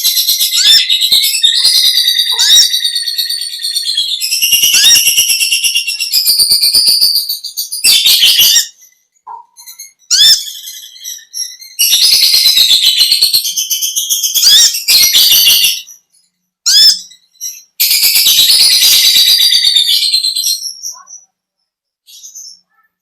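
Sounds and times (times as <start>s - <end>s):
lovebird trilled chatter: 0.0s - 16.0s, 16.7s - 21.3s
sharp rising bird chirps: 0.0s - 16.1s.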